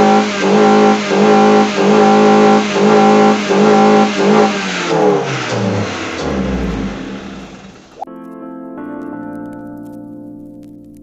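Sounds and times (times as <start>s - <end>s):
car engine revving: 0.0s - 8.0s.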